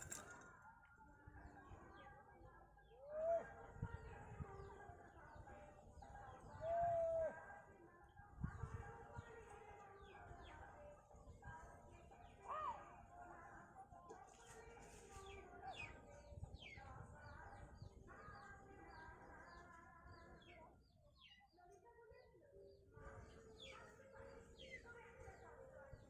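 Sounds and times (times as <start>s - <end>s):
small birds chirping: 14.4s - 26.0s.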